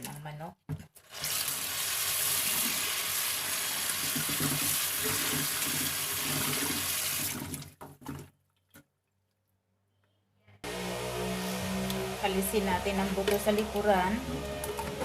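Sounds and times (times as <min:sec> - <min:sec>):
tap running into a sink: 0:03.9 - 0:07.4.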